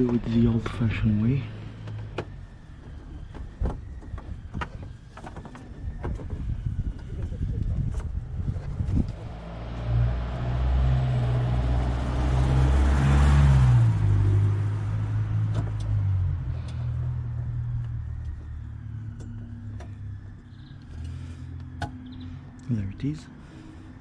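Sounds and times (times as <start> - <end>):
car driving past: 8.9 - 19.4.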